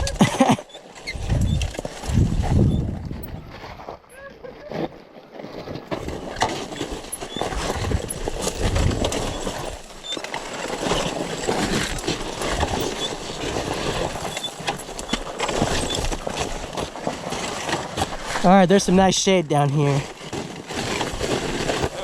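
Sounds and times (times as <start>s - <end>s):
bike rattling and knocking: 0.0s - 3.5s, 5.9s - 22.0s
tyres crunching over dirt: 0.0s - 22.0s.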